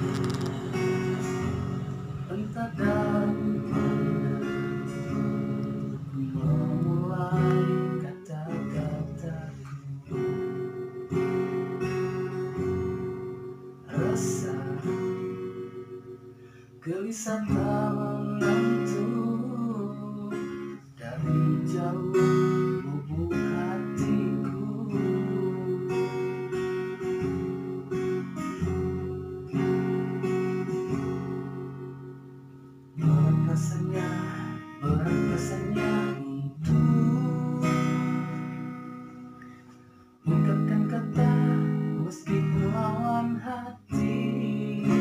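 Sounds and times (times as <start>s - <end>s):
strummed acoustic guitar: 0.0s - 45.0s
man singing: 2.1s - 11.4s, 13.8s - 15.6s, 16.8s - 28.0s, 33.0s - 38.7s, 40.2s - 45.0s.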